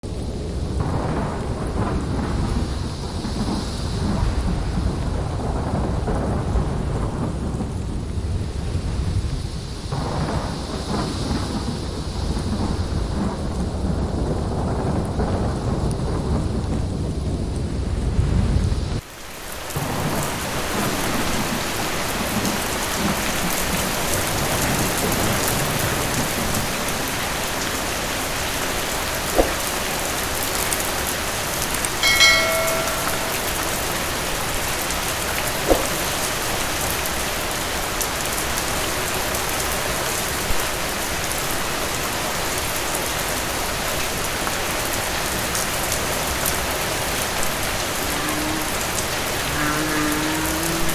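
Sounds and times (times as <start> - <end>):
steady rain falling: 0.0 - 50.9
low thunder rumble: 0.1 - 19.0
brief high pitched tone: 32.0 - 33.9.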